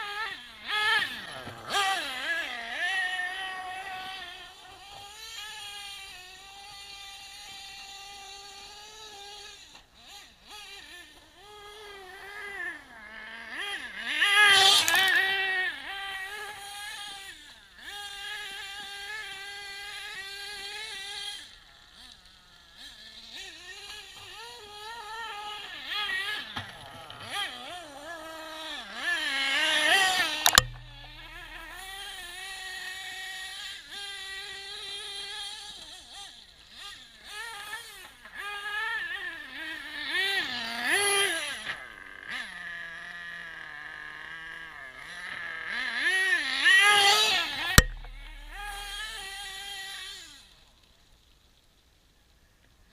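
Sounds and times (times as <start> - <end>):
small engine revving: 0.0 - 50.6
sharp knock: 30.4 - 32.2, 47.8 - 49.3.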